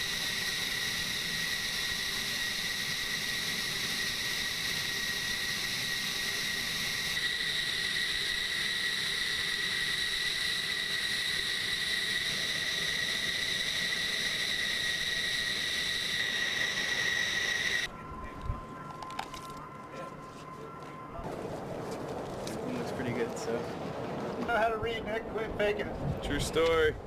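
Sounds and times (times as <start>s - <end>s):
jet engine idling whine: 0.0s - 25.9s
constant rushing hiss: 0.0s - 26.9s.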